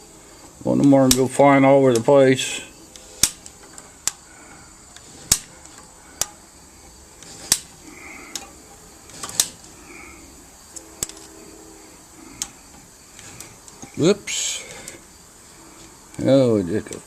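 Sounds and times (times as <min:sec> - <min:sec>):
ratchet clicking: 0:07.2 - 0:08.5.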